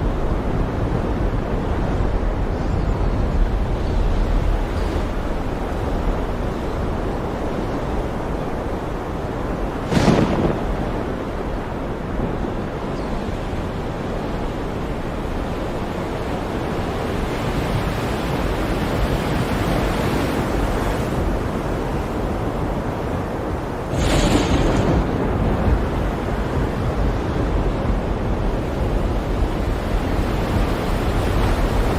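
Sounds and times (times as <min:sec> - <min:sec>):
heavy surf: 0:00.0 - 0:31.9
wind rushing: 0:08.2 - 0:12.8, 0:23.8 - 0:31.9
wave crashing: 0:08.2 - 0:13.9, 0:23.8 - 0:31.9.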